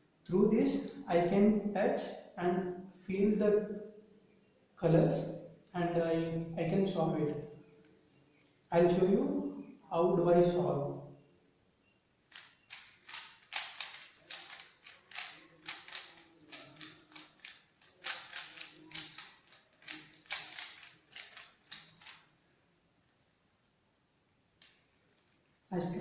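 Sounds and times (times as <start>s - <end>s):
plastic cube clacking: 12.3s - 22.3s.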